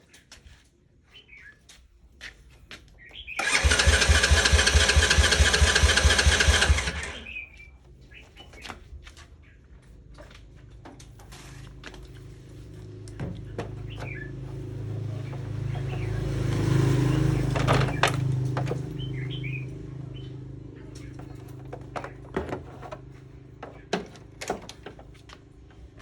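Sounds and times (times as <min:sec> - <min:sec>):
engine turning over: 0:03.4 - 0:07.4, 0:13.8 - 0:19.7.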